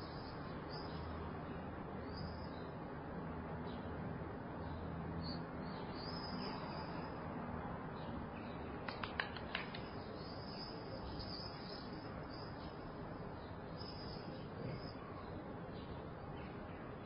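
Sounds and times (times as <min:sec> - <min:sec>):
distant city hum: 0:00.0 - 0:17.0
sharp clicks: 0:08.8 - 0:09.9.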